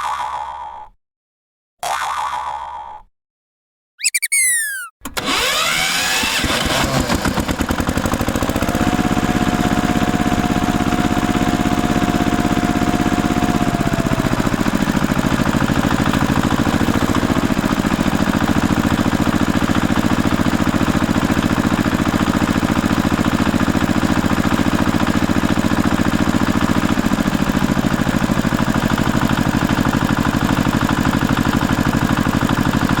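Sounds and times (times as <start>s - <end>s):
falling whistle-like sweeps: 4.0s - 4.9s.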